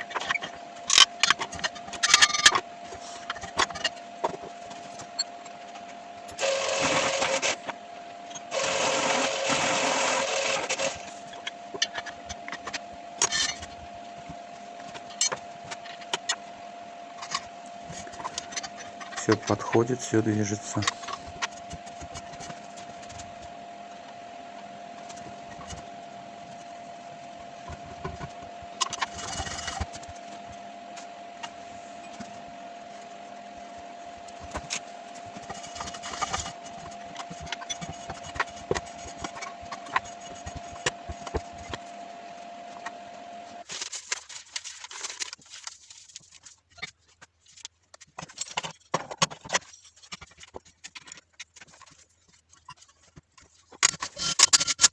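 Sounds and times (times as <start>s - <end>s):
small electric motor running: 0.0s - 43.7s.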